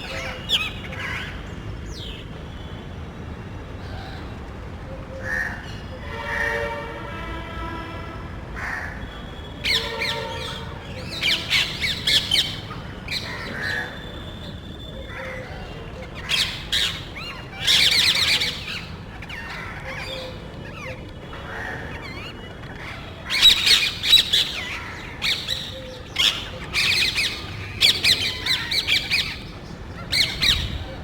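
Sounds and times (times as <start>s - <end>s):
parrots squawking: 0.0s - 1.4s, 9.6s - 14.2s, 15.0s - 31.0s.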